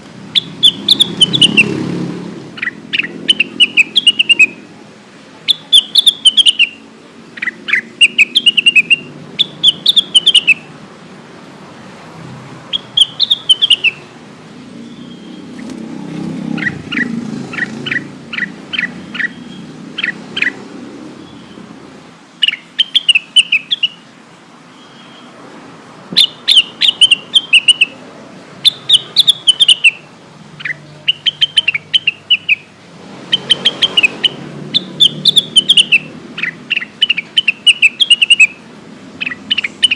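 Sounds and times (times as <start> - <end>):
bird singing high chirps: 0.3 - 1.8, 2.5 - 4.7, 5.4 - 10.7, 12.7 - 14.1, 14.7 - 15.8, 16.4 - 20.6, 21.2 - 21.7, 22.4 - 24.1, 24.7 - 25.4, 26.1 - 28.0, 28.6 - 39.9.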